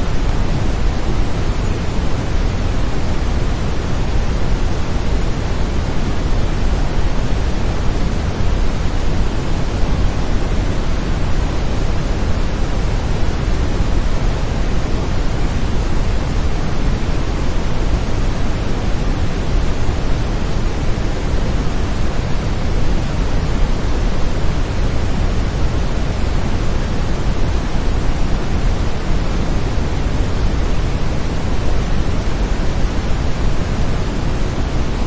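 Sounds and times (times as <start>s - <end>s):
brown noise hiss: 0.0s - 35.0s.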